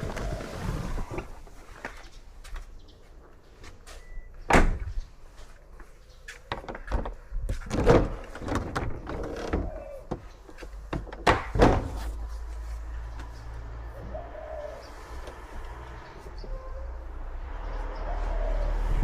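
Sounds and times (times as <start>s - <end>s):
sharp knocks and thumps: 6.5s - 12.1s.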